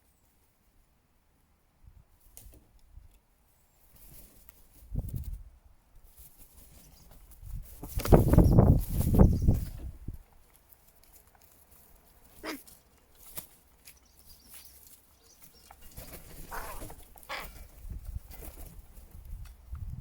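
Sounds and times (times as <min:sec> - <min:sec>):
bird calls: 0:12.4 - 0:12.8, 0:13.8 - 0:17.7.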